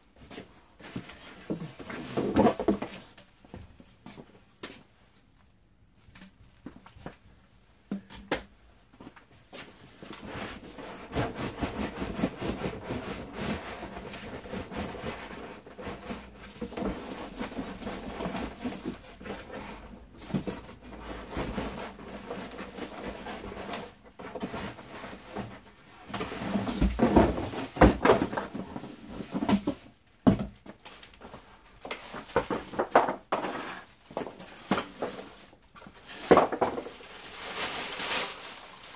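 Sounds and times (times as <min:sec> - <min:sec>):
cardboard and plastic rustling: 0:00.1 - 0:07.4, 0:09.0 - 0:38.9
knocks and scrapes: 0:32.0 - 0:37.0.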